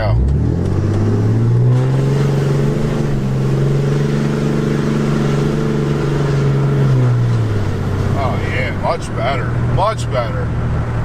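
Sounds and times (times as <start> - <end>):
diesel engine under heavy throttle: 0.0 - 11.0.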